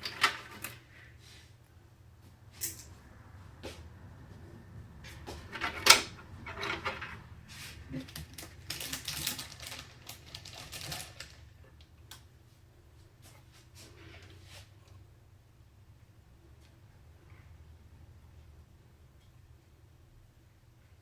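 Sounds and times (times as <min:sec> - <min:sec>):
computer hardware clicks and rattles: 0:07.9 - 0:12.3.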